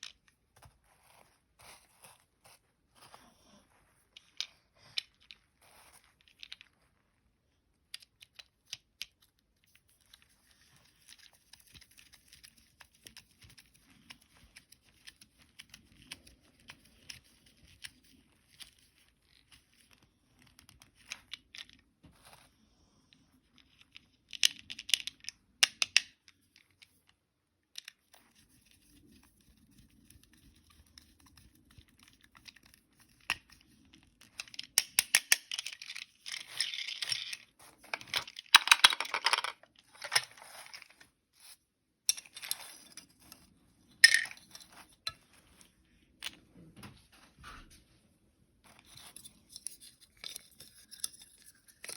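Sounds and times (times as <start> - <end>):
plastic toy parts clicking: 34.2 - 41.0.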